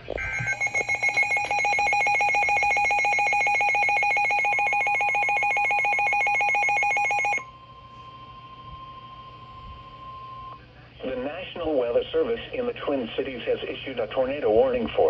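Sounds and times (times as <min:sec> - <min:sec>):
pulsing electronic alarm tone: 0:00.1 - 0:10.5
faint steady tone: 0:00.3 - 0:10.7.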